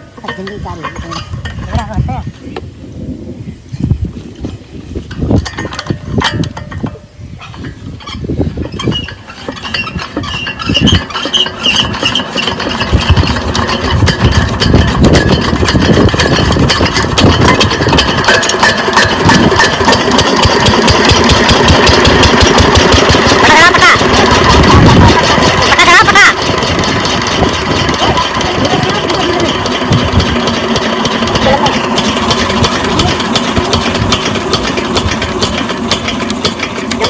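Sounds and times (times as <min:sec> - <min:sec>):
diesel engine starting: 0:09.9 - 0:37.0.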